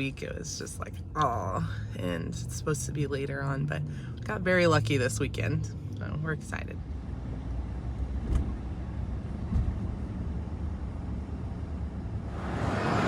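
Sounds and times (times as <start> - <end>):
engine and tyres rumbling: 0.0 - 13.0
car bumps: 8.2 - 8.6, 9.4 - 10.0.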